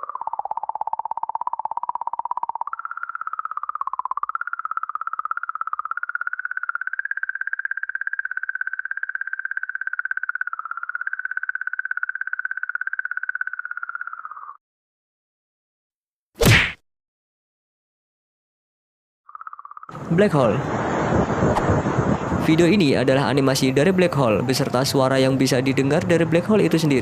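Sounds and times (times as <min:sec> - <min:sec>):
fast-pulsing warbling tone: 0:00.0 - 0:14.6.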